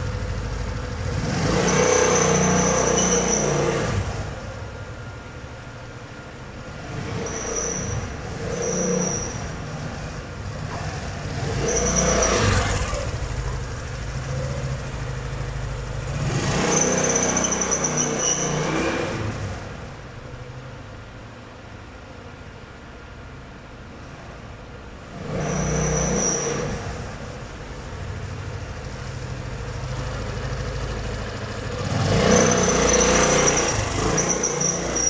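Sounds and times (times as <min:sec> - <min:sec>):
scooter engine revving: 0:00.0 - 0:04.6, 0:06.8 - 0:19.9, 0:25.2 - 0:35.0.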